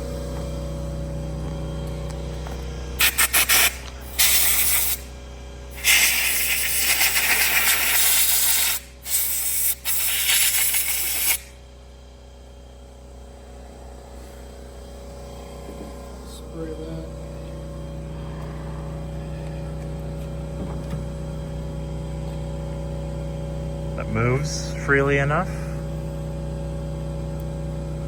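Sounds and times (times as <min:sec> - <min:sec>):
spray hissing in bursts: 0:03.0 - 0:05.0, 0:05.7 - 0:11.5.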